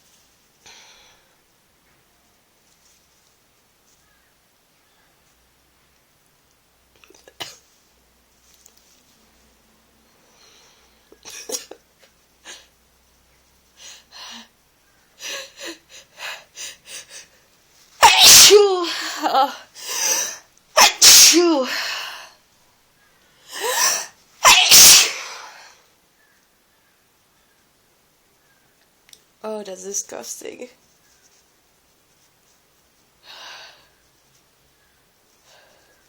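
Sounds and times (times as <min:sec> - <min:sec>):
person sneezing loudly: 0:18.0 - 0:21.9, 0:23.6 - 0:25.7
short catching breaths: 0:19.8 - 0:20.9
person sniffing: 0:19.8 - 0:21.8, 0:23.5 - 0:25.7.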